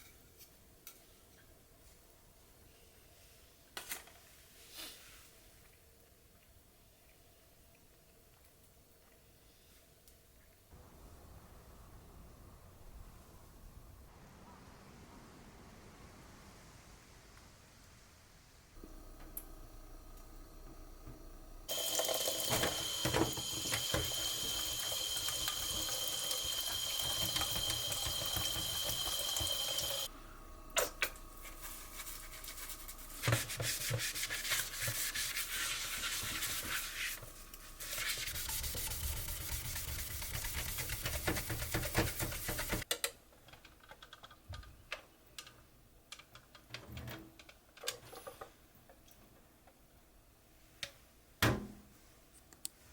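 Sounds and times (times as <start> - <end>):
running water: 21.7 - 30.1.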